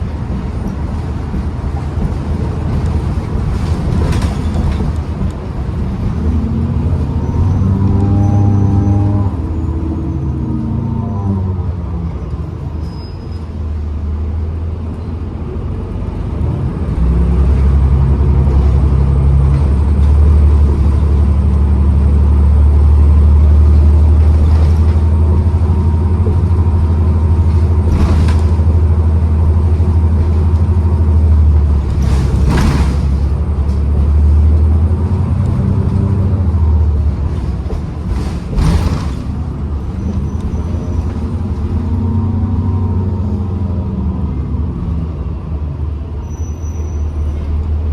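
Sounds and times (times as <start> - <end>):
sharp knocks and rattles: 0.0 - 6.7, 23.6 - 34.3, 36.9 - 42.0
bus engine rumble: 0.0 - 47.9.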